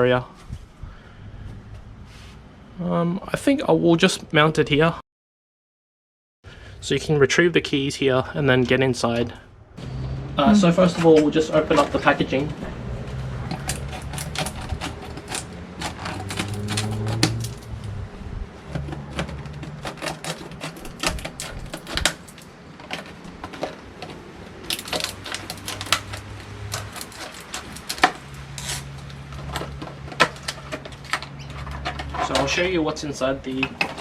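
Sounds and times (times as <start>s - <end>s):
plastic packaging clicking and snapping: 18.8s - 32.4s.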